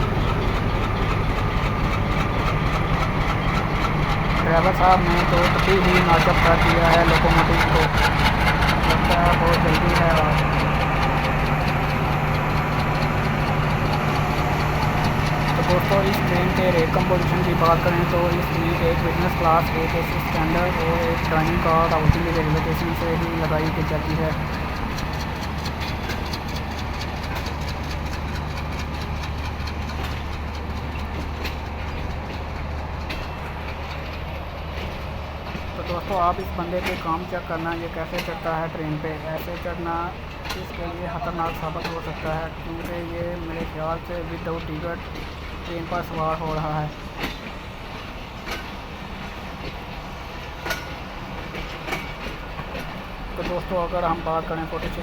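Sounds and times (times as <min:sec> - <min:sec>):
diesel engine drone: 0:00.0 - 0:33.1
train wheel clicks and knocks: 0:00.0 - 0:55.0.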